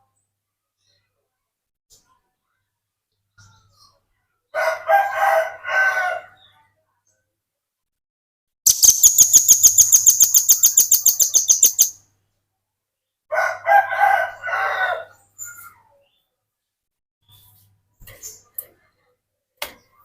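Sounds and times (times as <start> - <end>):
bird trilling: 8.7 - 12.0.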